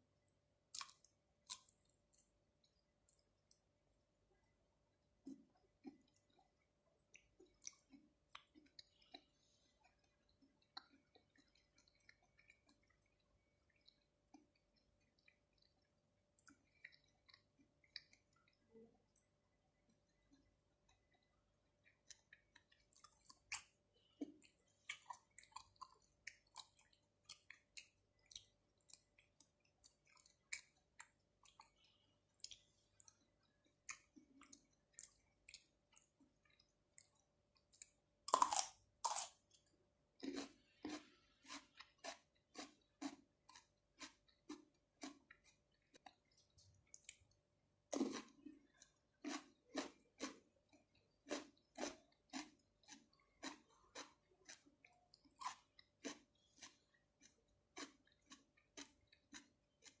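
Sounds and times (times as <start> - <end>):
wet chewing: 5.2 - 18.7, 19.8 - 60.0
crunchy bites: 38.3 - 39.4.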